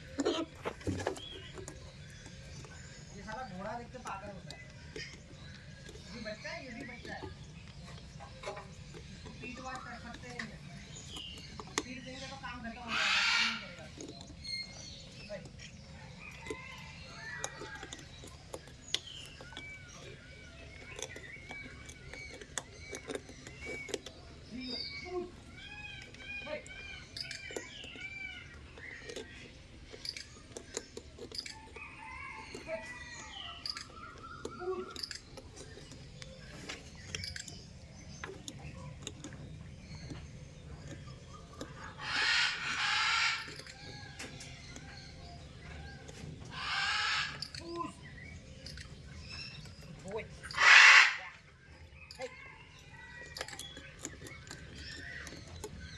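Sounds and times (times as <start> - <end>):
birds chirping: 0.0 - 55.9
macaw squawking: 12.1 - 13.9, 41.8 - 43.7, 46.5 - 47.6, 50.5 - 51.5.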